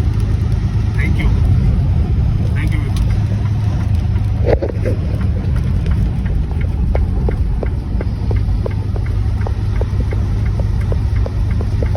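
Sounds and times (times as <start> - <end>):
car engine and road rumble: 0.0 - 11.9
light ticks: 2.9 - 11.9.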